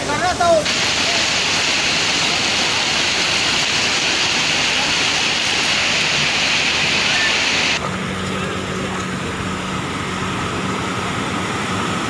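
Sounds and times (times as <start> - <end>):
heavy rain hissing: 0.0 - 12.0.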